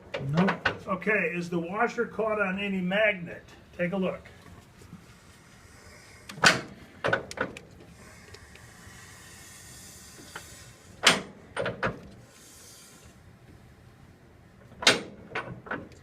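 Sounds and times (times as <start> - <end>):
faint hiss: 7.9 - 11.3, 12.2 - 13.8.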